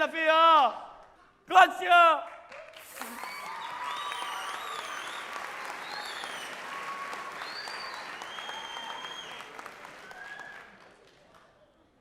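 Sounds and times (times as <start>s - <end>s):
audience applauding: 2.5s - 11.6s.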